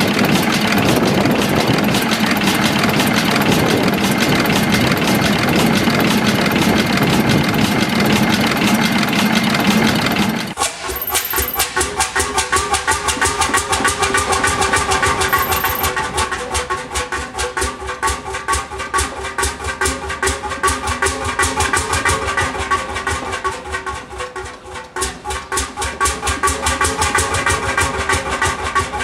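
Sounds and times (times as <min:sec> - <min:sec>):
large engine running: 0:00.0 - 0:29.0
steady ringing tone: 0:10.9 - 0:11.7, 0:15.3 - 0:15.9.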